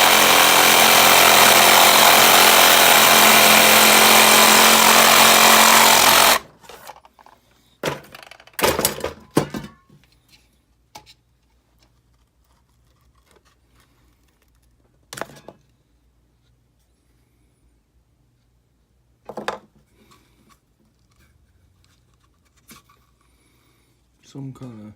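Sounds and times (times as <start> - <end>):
power tool cutting plastic: 0.0 - 6.5
knocks and clatters of pieces: 6.6 - 9.9.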